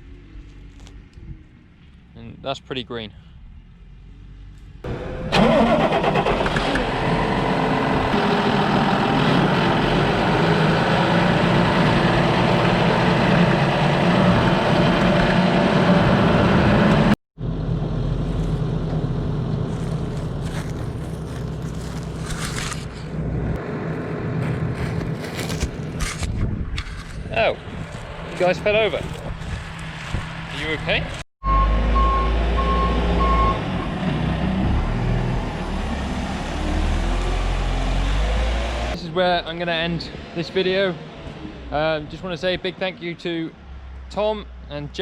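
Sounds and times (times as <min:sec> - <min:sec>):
tractor engine running loud: 0:04.9 - 0:22.0.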